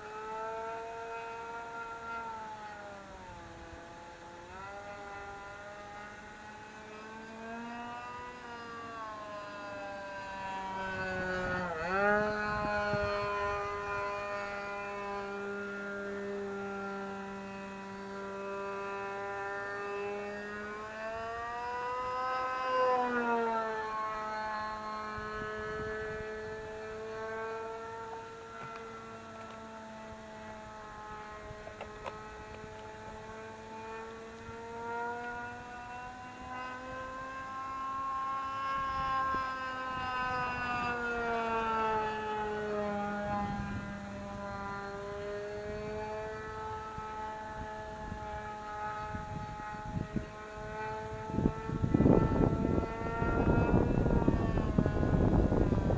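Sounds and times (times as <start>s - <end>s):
model airplane engine whine: 0.0s - 55.9s.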